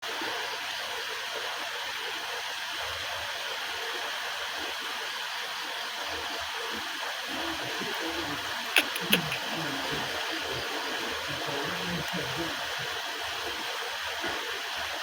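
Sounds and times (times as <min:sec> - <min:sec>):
steady rushing hiss: 0:07.3 - 0:15.0.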